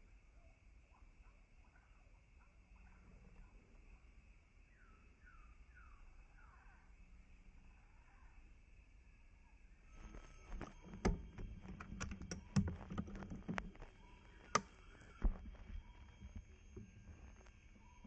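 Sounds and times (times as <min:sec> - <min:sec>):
faint steady background noise: 0:00.0 - 0:18.0
irregular clicks and knocks: 0:10.5 - 0:17.6.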